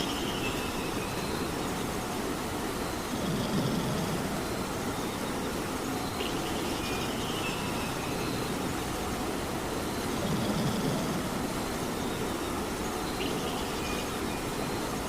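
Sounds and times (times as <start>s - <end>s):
steady rain: 0.0s - 15.0s.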